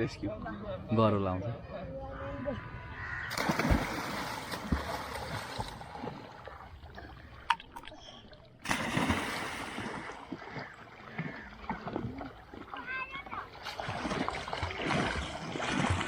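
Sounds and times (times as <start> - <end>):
water splashing in a pond: 3.2 - 16.0.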